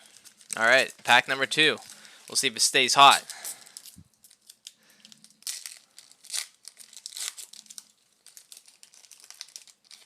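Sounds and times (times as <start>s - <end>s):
foil wrapper tearing and crinkling: 0.0s - 1.1s, 3.1s - 10.0s.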